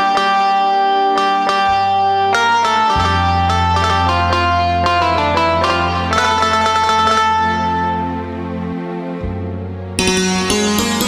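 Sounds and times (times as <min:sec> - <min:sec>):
keyboard plucked-string melody: 0:00.0 - 0:11.0
low bass drone: 0:02.3 - 0:11.0.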